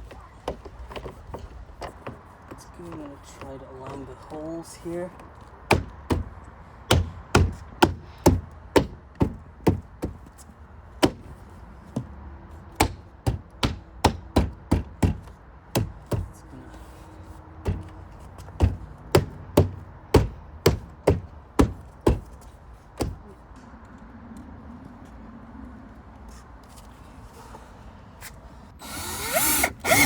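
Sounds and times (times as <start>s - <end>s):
knocks on car door panel: 12.8s - 16.3s, 18.6s - 22.3s.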